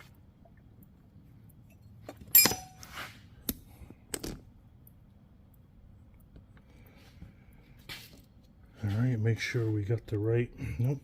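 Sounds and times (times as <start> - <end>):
metal parts clinking: 2.3 - 2.8.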